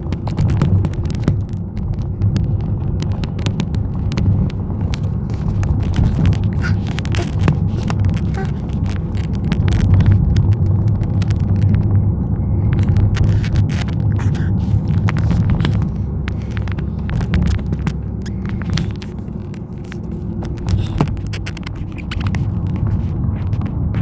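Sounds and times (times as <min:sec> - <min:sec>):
sharp ticks: 0:00.0 - 0:23.9
car engine and road rumble: 0:00.0 - 0:24.0.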